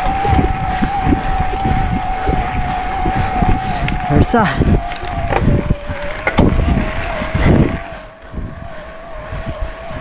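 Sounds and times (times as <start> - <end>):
wind: 0.0 - 10.0
electric bike motor whining: 0.6 - 7.9
tyres rumbling on rough trail: 1.7 - 7.9
bike knocks: 5.0 - 6.5.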